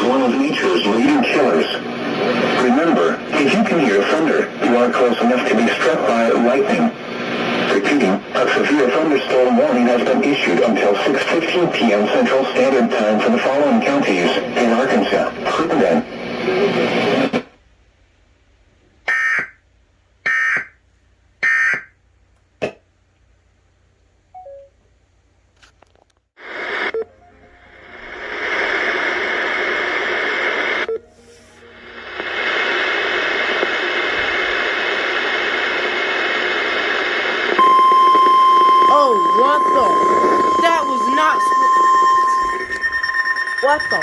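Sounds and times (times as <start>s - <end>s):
radio static hiss: 0.0s - 17.6s, 26.4s - 27.0s, 27.7s - 30.9s, 31.8s - 44.0s
digital data bursts: 37.6s - 44.0s
synthesized voice speaking: 38.8s - 42.8s, 43.6s - 44.0s.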